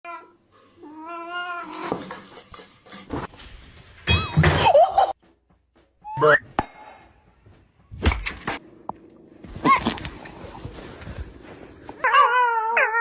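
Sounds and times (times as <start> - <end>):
scuffling: 7.2 - 12.2
cat wavering cries: 12.0 - 13.0.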